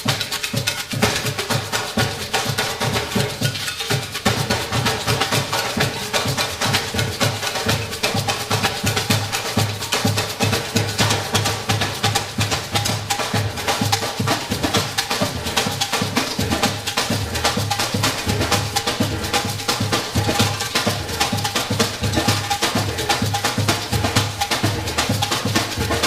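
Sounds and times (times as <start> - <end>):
drums and wood-block knocks: 0.0 - 26.0
upbeat instrumental music: 0.0 - 26.0.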